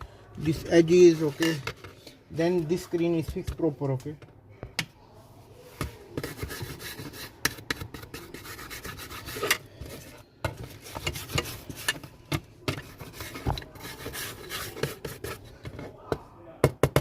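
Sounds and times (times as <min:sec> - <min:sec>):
hand tool scraping phone frame: 0:06.2 - 0:15.8.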